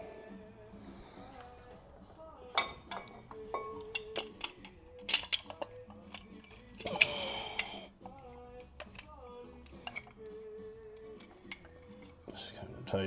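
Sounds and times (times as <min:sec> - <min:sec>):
faint background music: 0:00.0 - 0:13.0
metal tools clinking and scraping: 0:01.3 - 0:13.0.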